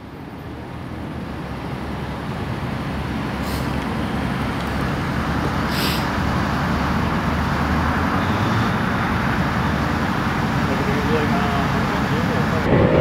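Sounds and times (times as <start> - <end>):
road noise: 0.0 - 13.0
short hiss: 3.4 - 3.8, 5.7 - 6.1.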